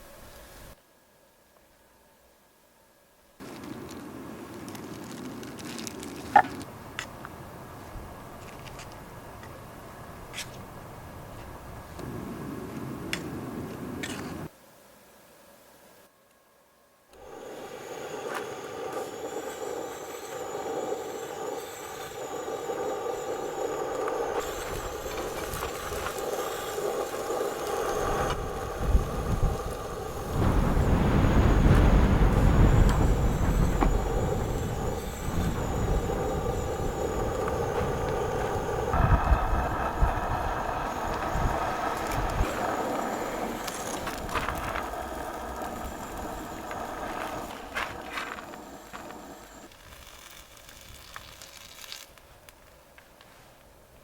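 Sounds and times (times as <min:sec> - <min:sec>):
vehicle engine and road noise: 0:24.0 - 0:49.8
deep rumble: 0:27.7 - 0:48.0.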